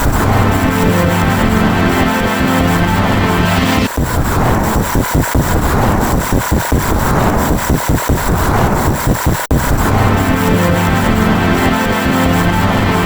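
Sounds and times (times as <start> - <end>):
steady-toned electronic music: 0.0 - 5.5, 9.5 - 13.0
harsh stuttering electronic drone: 0.0 - 13.0.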